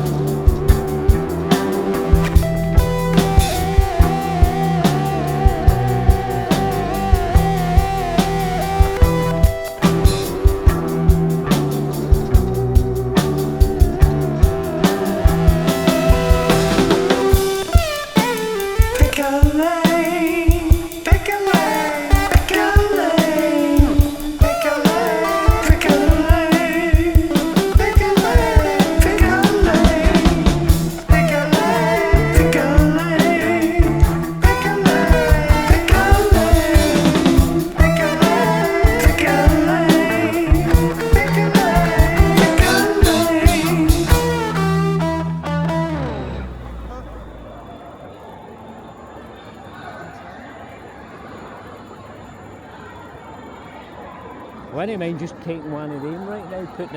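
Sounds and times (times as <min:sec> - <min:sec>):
person singing: 0:00.0 - 0:11.6, 0:13.2 - 0:47.2
drum beat: 0:00.0 - 0:46.0
guitar: 0:00.0 - 0:47.8.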